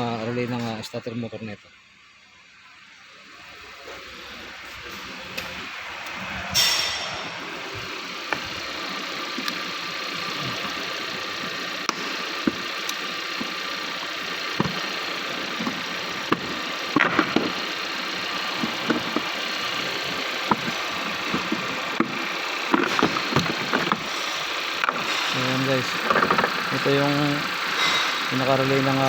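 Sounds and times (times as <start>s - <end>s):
car engine idling: 3.5s - 29.0s
loud rasping clatter: 9.4s - 29.0s.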